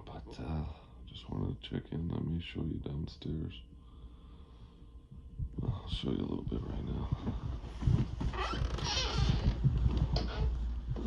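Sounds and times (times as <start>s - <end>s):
footsteps going down stairs: 5.4s - 11.0s.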